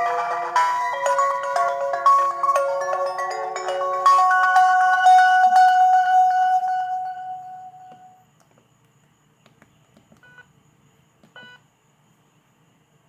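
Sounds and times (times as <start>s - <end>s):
phone ringtone: 0.0s - 8.2s
keypad beeps: 10.2s - 10.5s, 11.3s - 11.6s.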